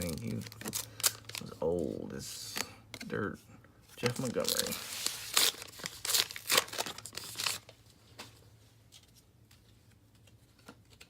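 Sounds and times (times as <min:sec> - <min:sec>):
wrapper ripping and crackling: 0:00.0 - 0:01.6, 0:04.0 - 0:07.8
faint handling of cards: 0:00.0 - 0:11.0.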